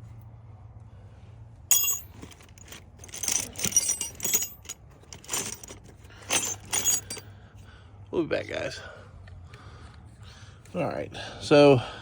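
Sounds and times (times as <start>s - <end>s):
small metal objects clinking: 1.7s - 7.2s.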